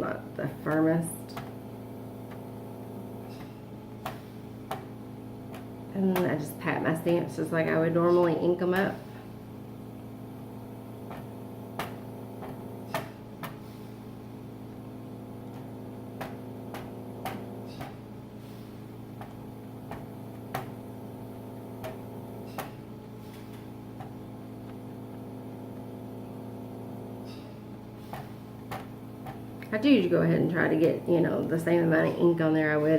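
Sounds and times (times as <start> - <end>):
steady background hum: 0.0 - 32.9.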